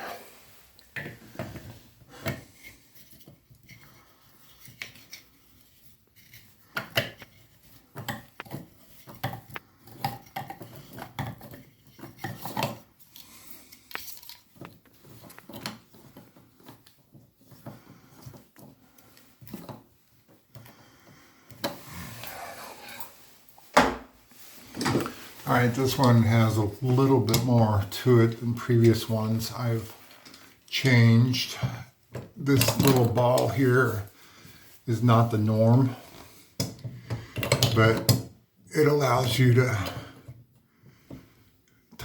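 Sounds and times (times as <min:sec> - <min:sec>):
shower fitting clicking and clinking: 0:32.1 - 0:33.6, 0:36.6 - 0:38.3.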